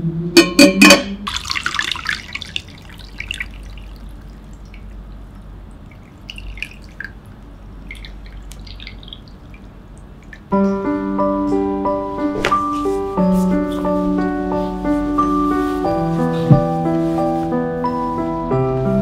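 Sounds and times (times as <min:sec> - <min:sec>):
liquid trickling: 0:01.2 - 0:10.6
water drips: 0:01.3 - 0:10.5.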